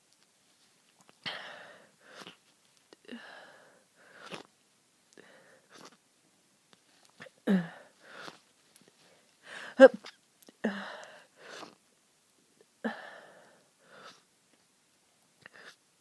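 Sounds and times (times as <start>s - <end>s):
short breaths: 3.1s - 4.5s, 7.2s - 8.4s, 9.0s - 9.9s, 10.6s - 11.8s, 12.9s - 14.3s.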